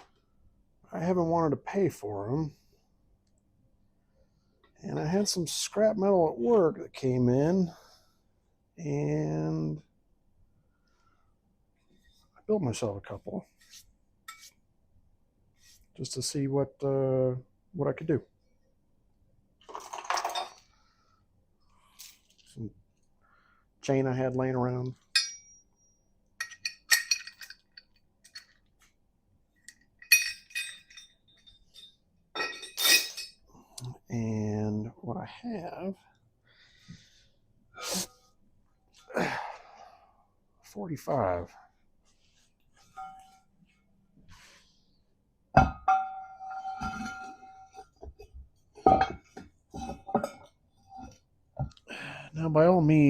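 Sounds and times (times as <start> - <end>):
chain clinking against metal: 19.7 - 20.6, 25.1 - 25.6, 26.4 - 28.7, 29.7 - 33.4, 42.9 - 43.4, 45.7 - 48.0
steel weight plates clanking: 30.0 - 33.4, 42.9 - 43.4, 45.7 - 48.0, 48.8 - 51.2.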